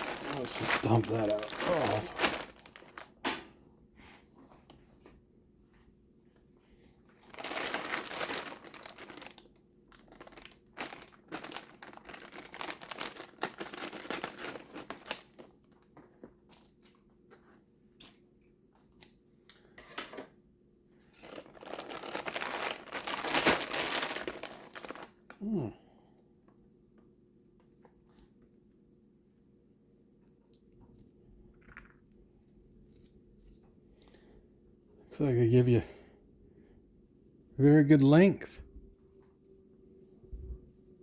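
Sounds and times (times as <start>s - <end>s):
plastic bags crinkling: 0.0s - 3.3s, 7.1s - 15.9s, 21.0s - 25.5s.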